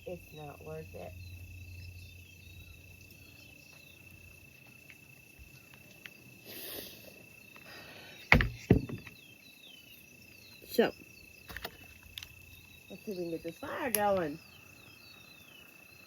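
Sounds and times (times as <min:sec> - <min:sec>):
insects trilling: 0:00.0 - 0:16.0
sharp knock: 0:08.3 - 0:09.1.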